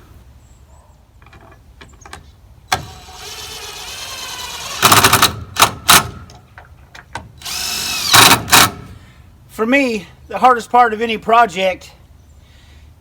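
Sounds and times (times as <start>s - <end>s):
power drill whining: 2.7s - 5.2s, 7.4s - 8.6s
drill driving screw into wood: 2.7s - 6.2s, 7.4s - 8.9s.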